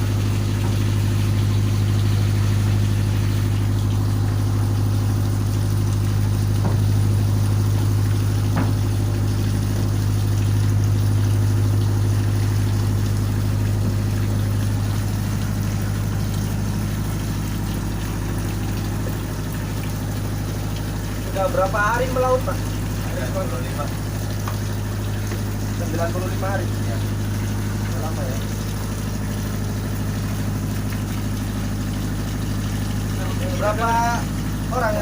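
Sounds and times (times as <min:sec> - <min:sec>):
boat engine idling: 0:00.0 - 0:35.0
short knocks: 0:06.6 - 0:07.0, 0:08.5 - 0:08.9.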